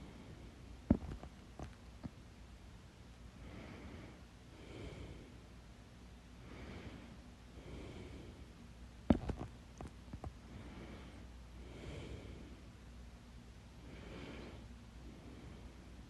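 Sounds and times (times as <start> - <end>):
person breathing in and out: 3.4 - 5.4, 6.4 - 8.5, 10.4 - 12.7, 13.8 - 16.0.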